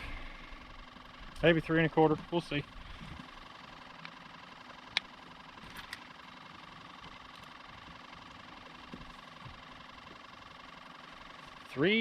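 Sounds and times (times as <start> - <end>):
faint motor hum: 0.0 - 12.0.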